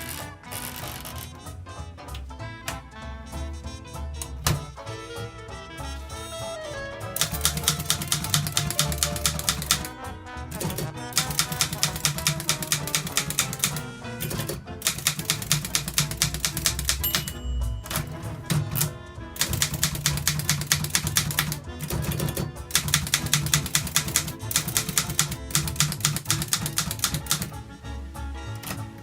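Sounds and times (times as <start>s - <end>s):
background music: 0.0s - 29.0s
typewriter bell ring: 7.2s - 9.9s, 11.2s - 13.8s, 14.9s - 21.6s
typewriter key strikes: 7.2s - 9.9s, 10.6s - 27.5s.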